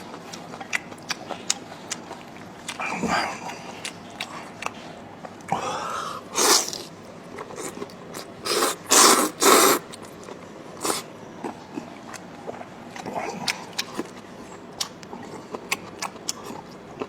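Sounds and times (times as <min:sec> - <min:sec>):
person chewing: 0:00.0 - 0:17.0
loud sucking sounds through mouth: 0:06.4 - 0:06.9, 0:08.4 - 0:09.8, 0:10.8 - 0:11.0.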